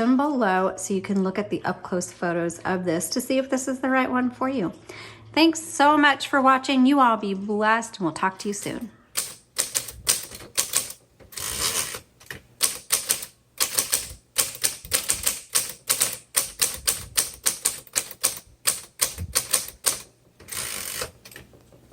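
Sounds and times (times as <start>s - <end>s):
typewriter keystroke clacks: 8.4s - 21.5s.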